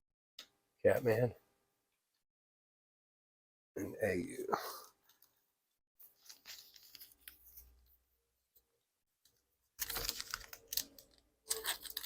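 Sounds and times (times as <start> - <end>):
card packaging crinkling: 6.0 - 7.8, 9.8 - 12.0.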